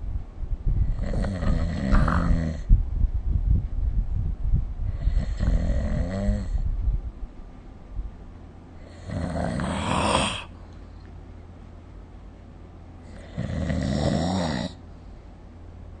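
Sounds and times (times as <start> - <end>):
person snoring: 8.9 - 10.6, 13.2 - 14.8.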